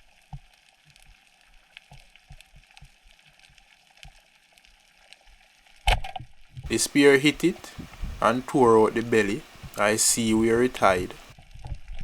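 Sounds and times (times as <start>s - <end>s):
underwater clicks and crackles: 0.0s - 6.7s, 7.6s - 8.3s, 8.9s - 9.9s, 11.2s - 12.0s
low hiss: 6.6s - 11.4s.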